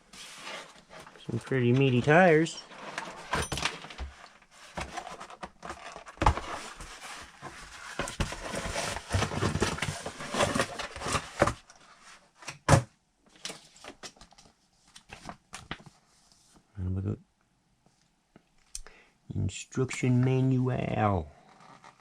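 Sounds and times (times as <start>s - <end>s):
packaging rustling: 0.2s - 11.6s.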